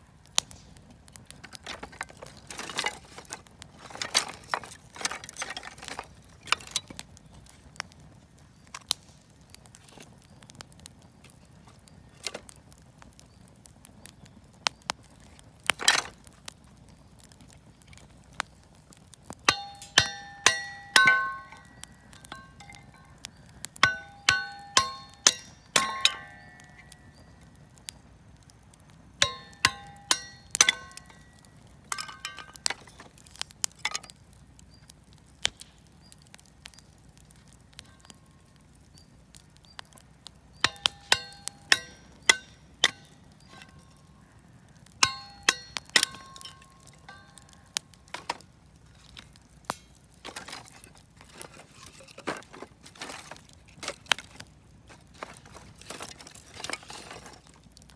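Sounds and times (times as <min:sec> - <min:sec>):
sharp metallic clinks: 0:19.5 - 0:27.5, 0:29.2 - 0:32.9, 0:40.6 - 0:44.1, 0:45.0 - 0:47.9.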